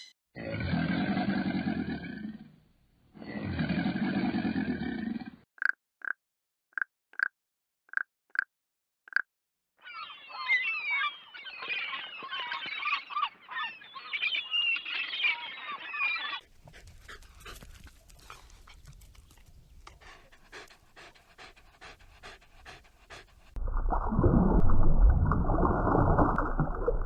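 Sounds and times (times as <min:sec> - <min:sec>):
high chirping animal calls: 0:09.8 - 0:16.5
dog panting: 0:16.5 - 0:23.6.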